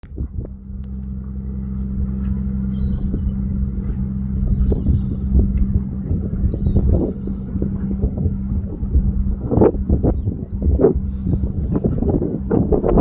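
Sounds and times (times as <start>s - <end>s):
boat engine droning: 0.0s - 13.0s.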